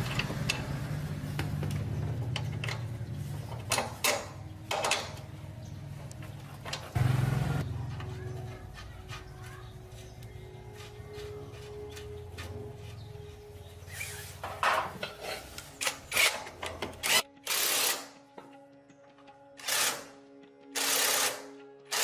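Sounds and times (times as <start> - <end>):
motorbike engine idling: 0.0 - 14.2.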